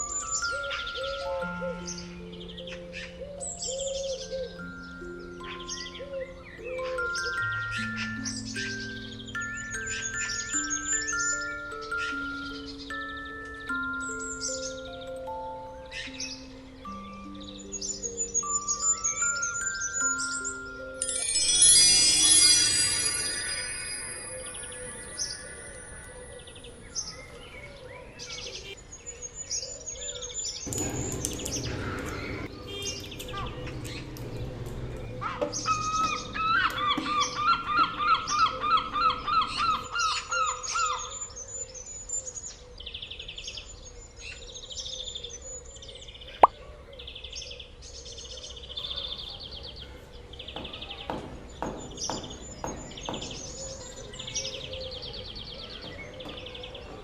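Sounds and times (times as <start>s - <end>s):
birds chirping and calling: 0.0s - 57.0s.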